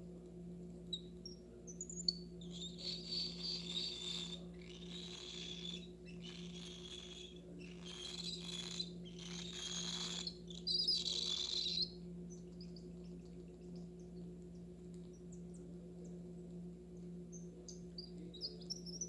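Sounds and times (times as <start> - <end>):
low electrical hum: 0.0 - 19.0
faint bird chirps and clicks: 0.8 - 19.0
bird chick begging calls: 2.5 - 11.9.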